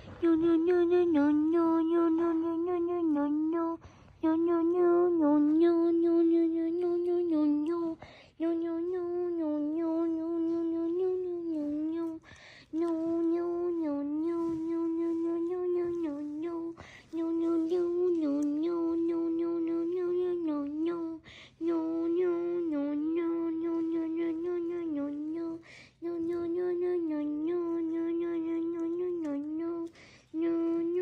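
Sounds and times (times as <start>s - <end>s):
person humming: 0.0s - 31.0s
quick breath: 12.2s - 12.7s, 30.0s - 30.3s.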